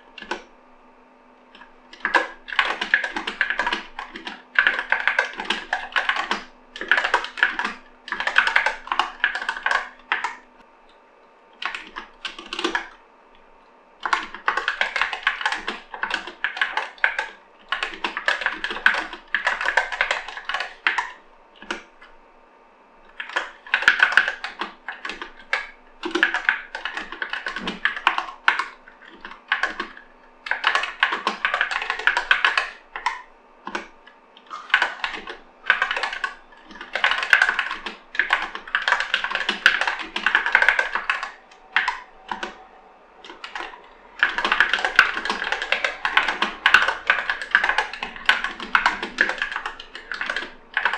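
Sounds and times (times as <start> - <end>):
mechanical keyboard typing: 0.2 - 0.5, 1.6 - 10.4, 11.6 - 13.0, 14.0 - 22.1, 23.1 - 50.9.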